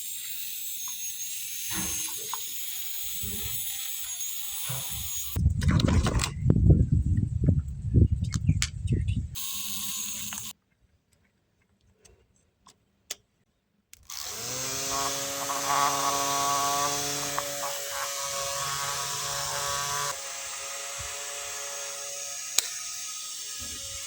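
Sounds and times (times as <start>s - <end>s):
small electric motor whirring: 0.0s - 5.4s, 9.4s - 10.6s, 14.0s - 24.0s.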